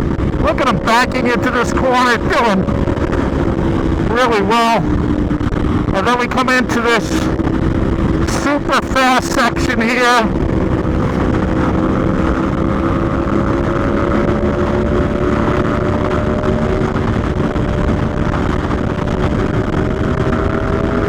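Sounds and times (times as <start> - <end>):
motorcycle engine at speed: 0.0 - 21.0
wind rush: 0.0 - 21.0.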